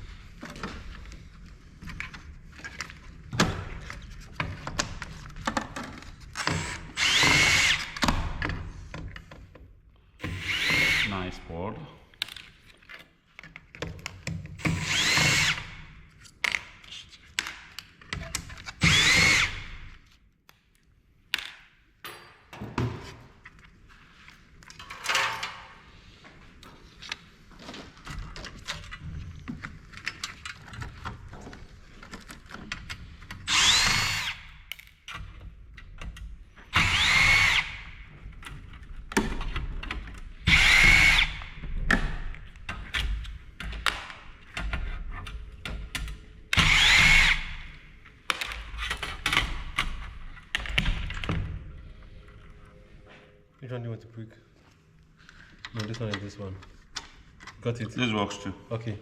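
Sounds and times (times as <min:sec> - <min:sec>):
drill-driver motor whine: 0:06.6 - 0:08.0, 0:10.3 - 0:11.1, 0:14.7 - 0:15.7, 0:18.8 - 0:19.7, 0:33.5 - 0:34.6, 0:36.7 - 0:37.9, 0:40.5 - 0:41.5, 0:46.6 - 0:47.6
parts clicking and knocking: 0:28.0 - 0:51.6.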